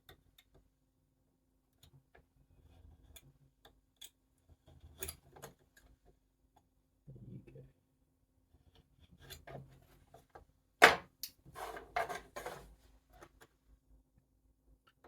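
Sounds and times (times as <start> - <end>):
hand tool scraping wood: 11.5 - 12.8.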